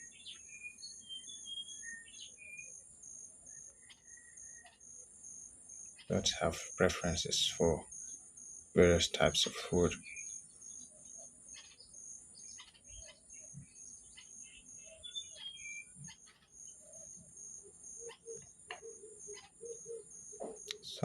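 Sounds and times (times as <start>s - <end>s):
faint bird chirps: 0.0s - 21.0s
insect trilling: 5.7s - 21.0s.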